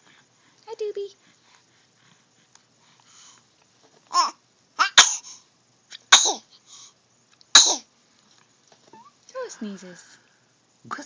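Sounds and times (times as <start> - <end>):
baby sneezing: 4.1 - 6.5, 7.5 - 7.9.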